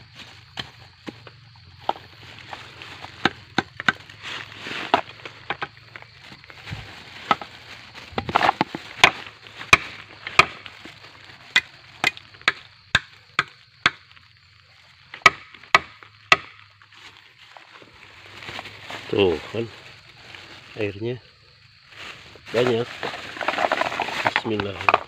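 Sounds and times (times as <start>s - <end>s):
blade chopping bamboo: 3.1s - 4.0s, 8.1s - 10.7s, 15.2s - 16.6s.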